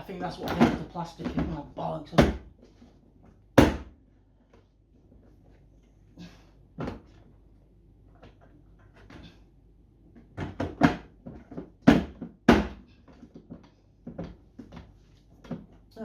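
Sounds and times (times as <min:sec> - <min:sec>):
plastic parts knocking: 0:10.2 - 0:15.8.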